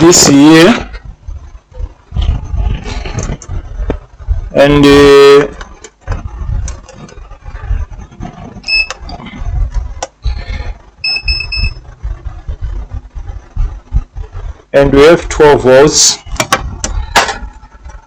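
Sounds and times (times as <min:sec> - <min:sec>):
electronic beeps: 0:08.6 - 0:09.2, 0:11.0 - 0:11.9.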